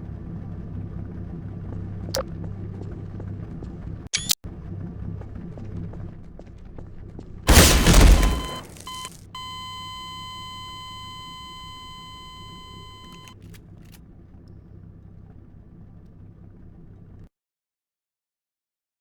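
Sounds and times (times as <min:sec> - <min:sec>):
brief electronic beep: 0:07.5 - 0:13.4
high-pitched electronic beep tone: 0:08.2 - 0:13.3.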